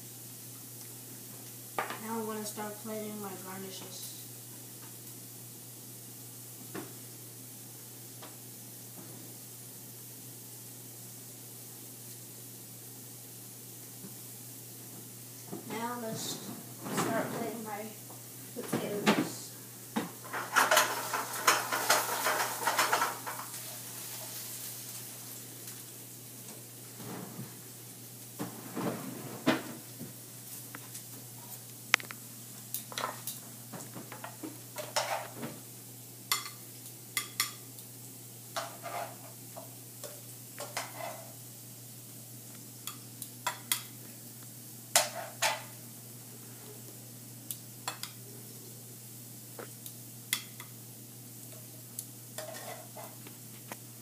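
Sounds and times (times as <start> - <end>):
faint food sizzle: 0.0 - 54.0
metal utensil scraping a pan: 34.8 - 35.3, 38.6 - 39.3, 40.6 - 41.4, 52.4 - 53.2.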